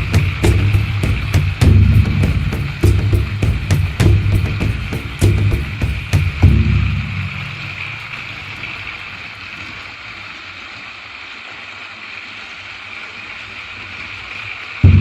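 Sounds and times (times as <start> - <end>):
engine low rumble: 0.0 - 9.4
even hiss: 0.0 - 10.2.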